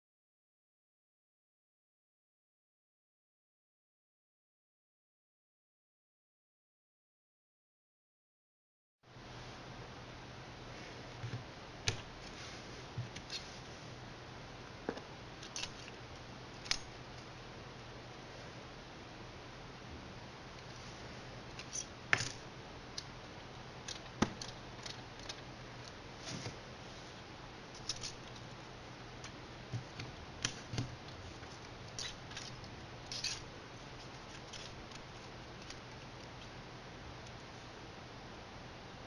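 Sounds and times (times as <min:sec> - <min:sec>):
faint steady hum: 0:09.0 - 0:39.0.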